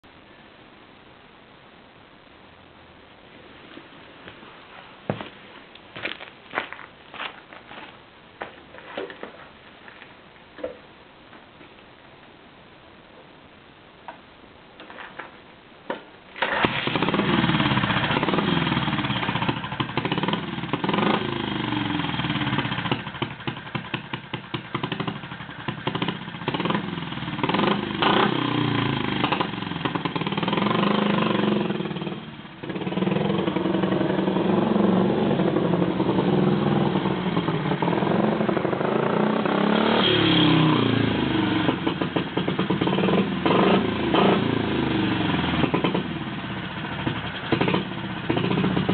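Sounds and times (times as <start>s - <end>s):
motorcycle engine starting and revving: 16.4s - 48.9s.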